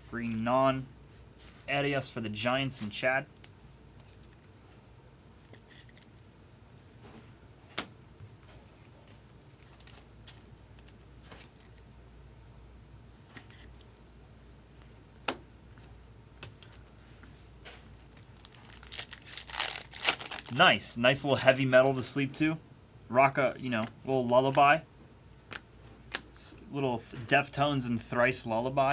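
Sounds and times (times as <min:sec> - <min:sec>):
low steady hum: 0:00.0 - 0:28.9
card wrappers rustling and crinkling: 0:09.2 - 0:11.8, 0:18.0 - 0:22.2.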